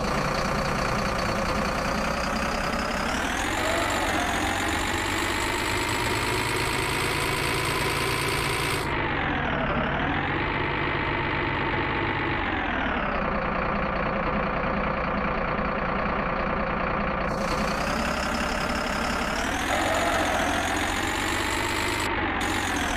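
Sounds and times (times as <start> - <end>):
toy excavator motor running: 2.7 - 8.9, 17.3 - 22.9.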